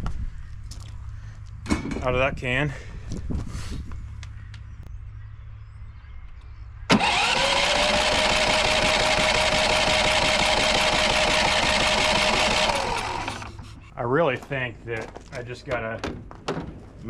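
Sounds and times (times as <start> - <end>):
generator engine running: 6.9 - 13.9.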